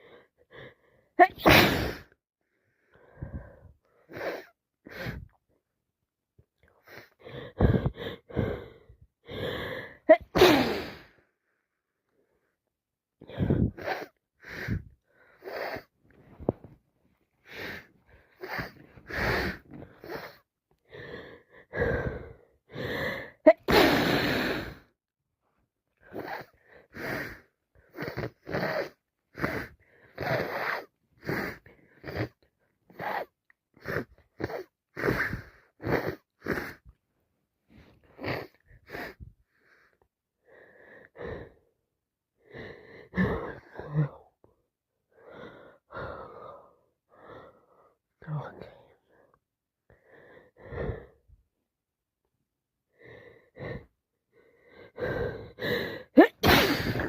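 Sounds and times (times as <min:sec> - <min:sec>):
gasping in-breaths: 0:00.0 - 0:05.4, 0:06.6 - 0:11.3, 0:13.2 - 0:16.6, 0:17.4 - 0:24.9, 0:42.4 - 0:51.4, 0:52.9 - 0:57.0
woman sneezing: 0:01.2 - 0:02.1, 0:10.1 - 0:11.0, 0:56.2 - 0:57.0.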